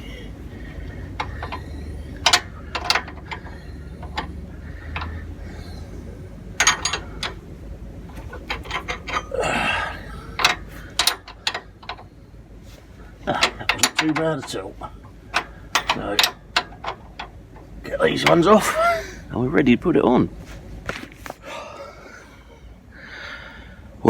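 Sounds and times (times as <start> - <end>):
metal spanners clicking on bolts: 1.2 - 5.3, 6.6 - 7.4, 8.2 - 9.6, 10.4 - 12.1, 13.3 - 17.4
scraping rustle: 20.4 - 21.4.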